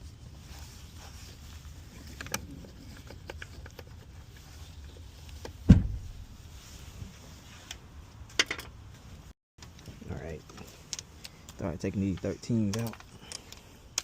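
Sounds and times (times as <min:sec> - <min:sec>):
dull thump: 0:05.6 - 0:06.3.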